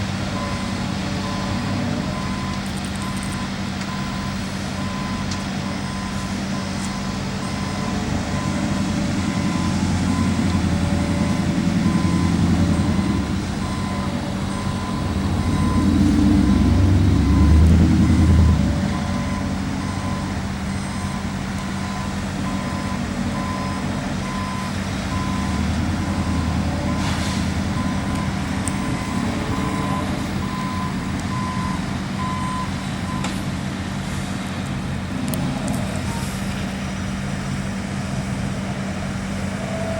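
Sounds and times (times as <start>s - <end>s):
diesel engine rumble: 0.0s - 39.9s
truck reversing alarm beeps: 0.0s - 39.9s.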